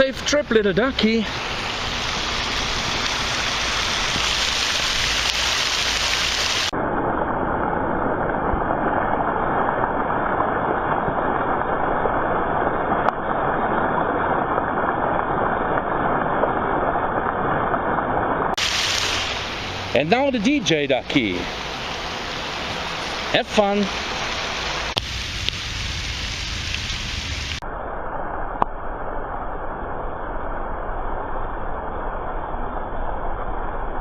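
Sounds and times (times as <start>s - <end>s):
waterfall rushing: 0.1s - 6.7s, 18.6s - 27.6s.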